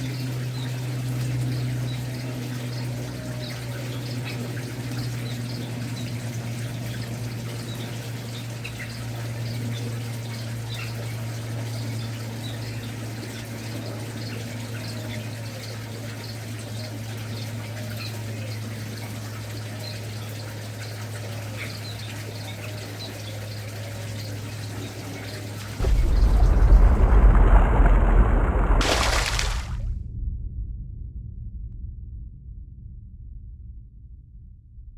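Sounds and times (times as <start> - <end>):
loud rumbling noise: 25.8 - 34.9.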